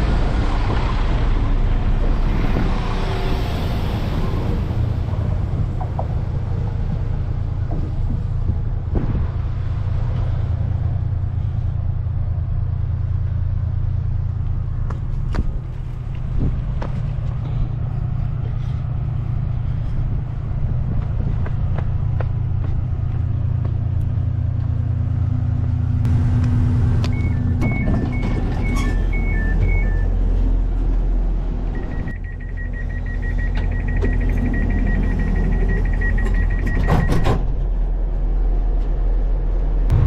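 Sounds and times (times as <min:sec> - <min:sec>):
diesel train rumbling: 0:00.0 - 0:40.0
two-note beep: 0:31.8 - 0:36.8.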